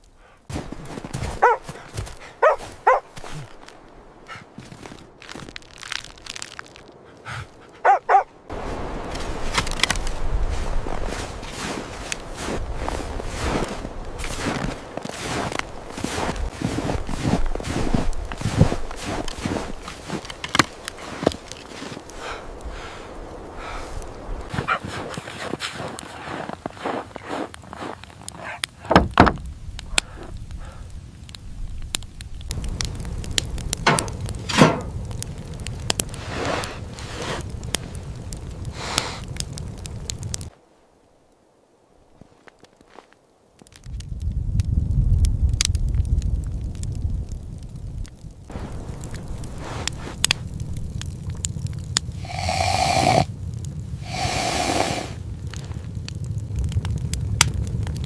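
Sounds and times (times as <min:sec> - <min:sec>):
fire hissing: 0:00.0 - 0:40.8, 0:43.6 - 0:58.0
fire crackling and popping: 0:00.0 - 0:58.0
footsteps crunching through snow: 0:00.5 - 0:28.6, 0:42.1 - 0:43.2, 0:48.5 - 0:50.4
heavy thumps: 0:28.8 - 0:29.5, 0:33.6 - 0:35.1.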